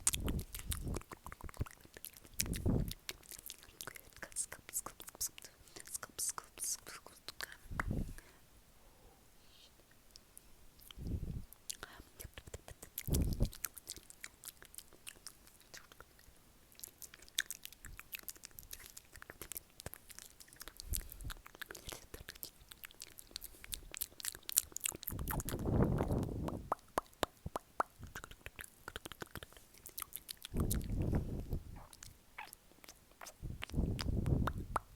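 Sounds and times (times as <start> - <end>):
mouth clicks and smacks: 0.0 - 8.2, 9.8 - 34.9
low breathy sounds: 7.8 - 9.8.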